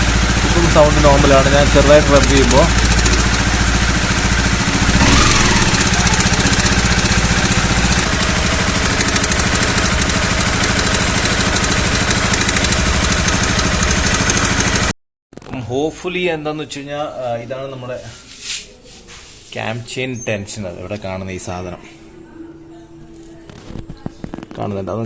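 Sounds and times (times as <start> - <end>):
engine rattle tik-tik: 0.0 - 14.9
motorcycle engine idling: 0.0 - 14.9.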